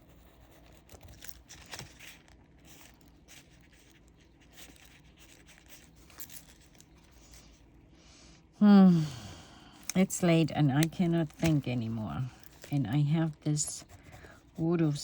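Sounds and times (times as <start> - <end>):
paper rustling: 0.3 - 7.7, 9.8 - 14.7
marker tapping and scratching paper: 10.6 - 15.0.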